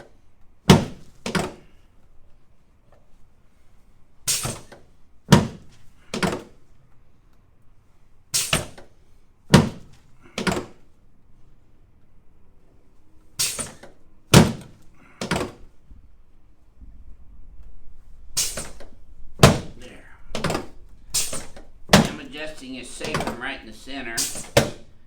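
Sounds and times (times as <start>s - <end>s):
adjusting table thunks: 18.4s - 19.8s, 20.4s - 22.2s, 24.3s - 24.8s.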